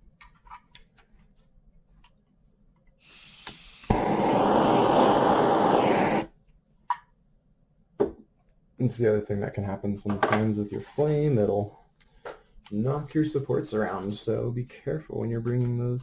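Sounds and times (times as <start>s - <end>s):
torch flame hissing: 3.0s - 6.3s
butane torch igniting click: 3.2s - 6.3s.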